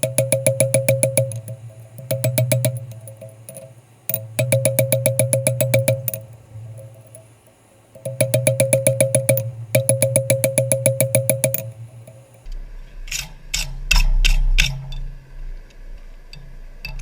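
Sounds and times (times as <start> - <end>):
dull heavy hammer blows: 0.0 - 12.5
hammer ringing on steel: 0.0 - 12.5.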